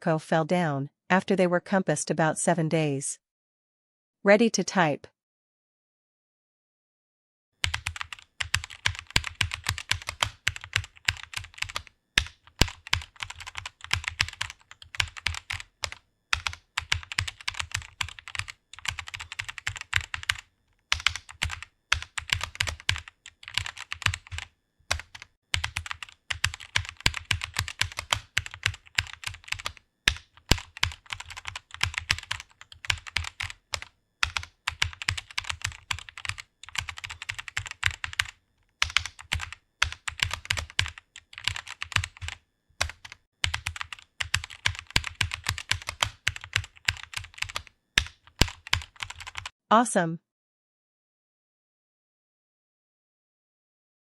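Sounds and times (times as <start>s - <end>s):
fast typing on computer keyboard: 7.6s - 49.6s.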